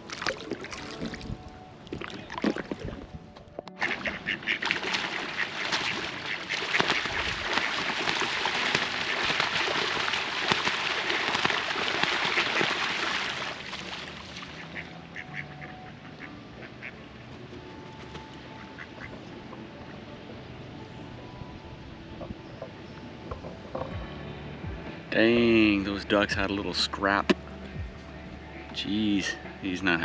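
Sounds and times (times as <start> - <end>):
ducks quacking in a scuffle: 3.8 - 13.4, 14.6 - 16.0, 16.6 - 17.0.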